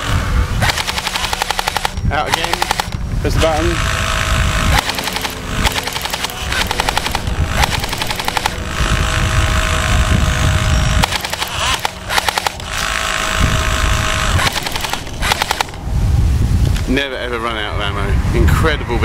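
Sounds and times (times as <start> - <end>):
airsoft gun firing full-auto bursts: 0.6 - 3.0, 3.6 - 9.1, 11.0 - 15.8
magazine winding: 0.6 - 3.0, 4.7 - 8.6, 11.0 - 13.1, 14.0 - 15.8.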